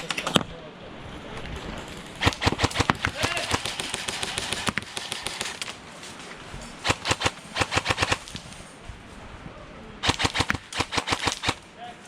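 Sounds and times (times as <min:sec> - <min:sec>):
airsoft rifle bursts: 0:02.2 - 0:05.8, 0:06.8 - 0:08.6, 0:10.0 - 0:11.7.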